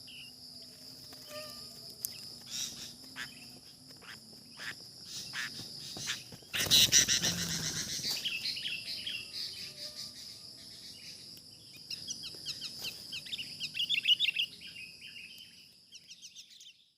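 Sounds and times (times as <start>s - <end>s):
high insect drone: 0.0s - 16.9s
birds chattering: 1.3s - 16.9s.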